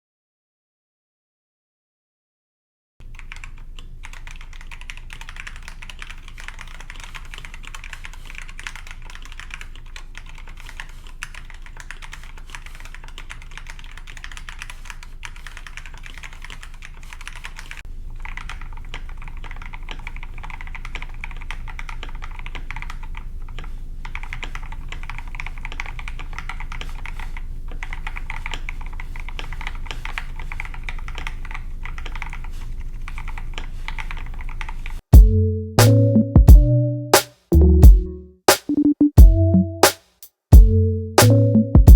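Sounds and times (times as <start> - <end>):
fast mechanical keyboard typing: 3.0 - 35.0.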